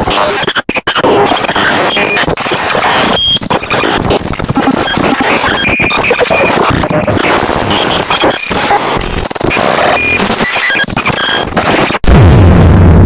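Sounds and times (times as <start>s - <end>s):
distorted noise: 0.0s - 13.0s
short electronic tones: 3.0s - 11.6s.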